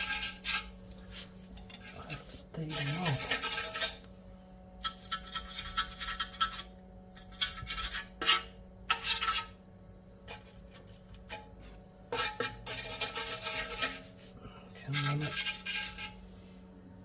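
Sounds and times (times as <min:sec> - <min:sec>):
metal tools scraping and clinking: 0:01.5 - 0:04.0.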